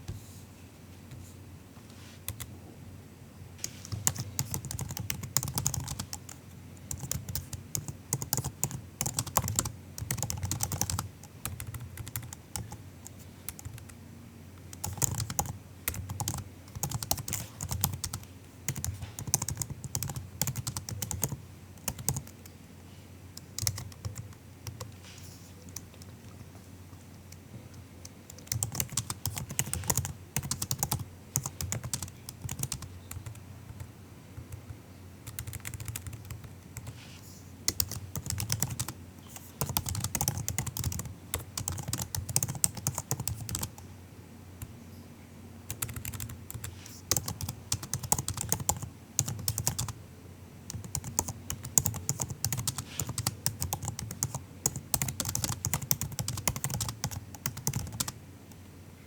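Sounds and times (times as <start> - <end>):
laptop keyboard typing: 3.6 - 14.0, 14.6 - 22.5, 23.4 - 25.0, 28.0 - 37.0, 37.7 - 43.8, 45.7 - 50.0, 50.7 - 58.2.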